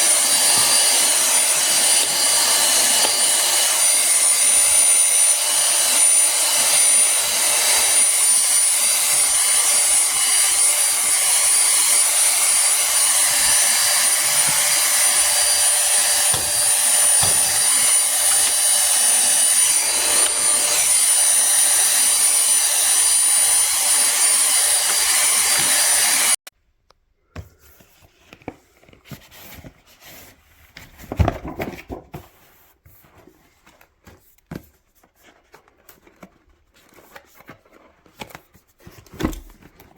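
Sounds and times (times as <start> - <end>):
handheld vacuum cleaner whining: 0.0 - 26.5.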